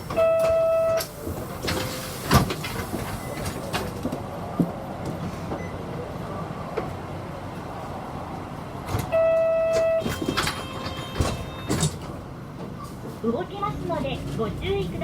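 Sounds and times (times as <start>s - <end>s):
bus low rumble: 0.0s - 15.0s
short electronic beep: 0.2s - 1.0s.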